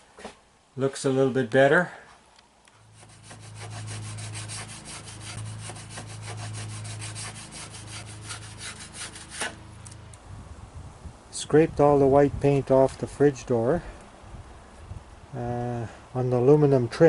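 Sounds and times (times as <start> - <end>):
steady low hum: 0.0 - 17.0
hand scraping a hard surface: 2.8 - 9.6.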